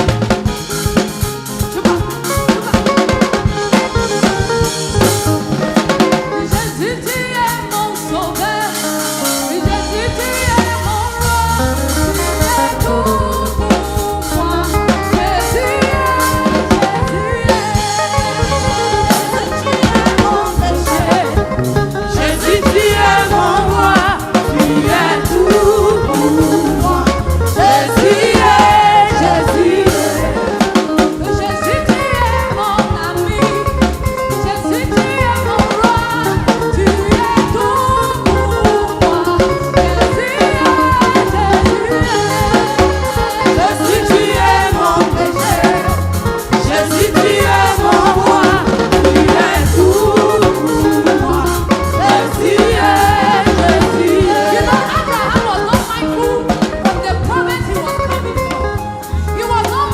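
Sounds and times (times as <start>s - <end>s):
gospel choir singing: 0.0s - 58.8s
drum kit steady beat: 0.0s - 59.9s
live band: 0.0s - 59.9s.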